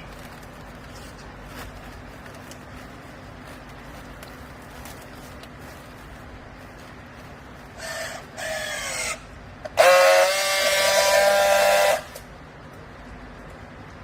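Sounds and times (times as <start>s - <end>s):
high-pitched mechanical whine: 7.5s - 12.5s.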